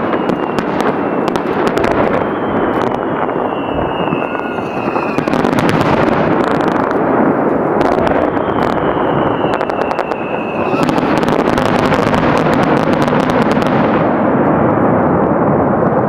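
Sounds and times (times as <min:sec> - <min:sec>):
descending firework whistles: 0:00.0 - 0:14.0
fireworks crackling: 0:00.0 - 0:14.8
fireworks booming: 0:00.0 - 0:16.0.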